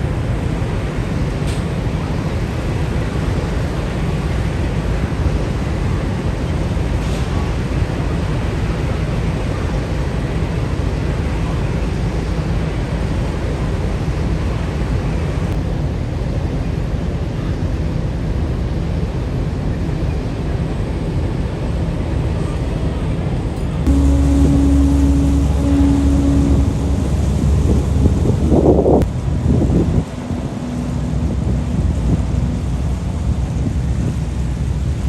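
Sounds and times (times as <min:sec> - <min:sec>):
ferry engine rumbling: 0:00.0 - 0:15.6, 0:22.5 - 0:35.0
hiss of wind and water: 0:23.9 - 0:35.0.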